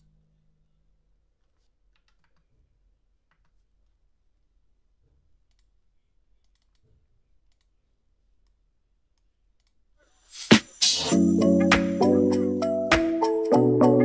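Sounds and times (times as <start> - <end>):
music with percussive hits: 10.4 - 14.0.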